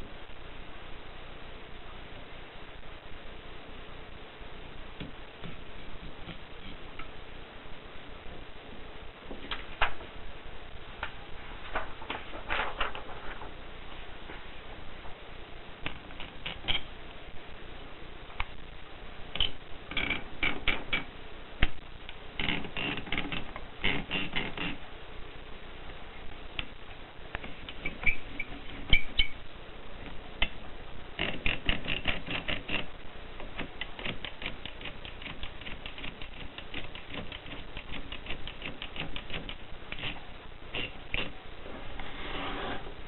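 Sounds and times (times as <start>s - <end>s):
typewriter keys striking: 33.6s - 40.2s.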